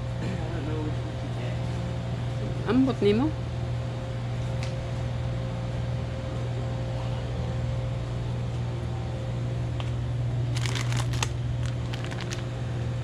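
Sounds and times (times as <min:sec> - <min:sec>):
steady low hum: 0:03.3 - 0:13.0
plastic packaging crinkling: 0:10.5 - 0:12.5.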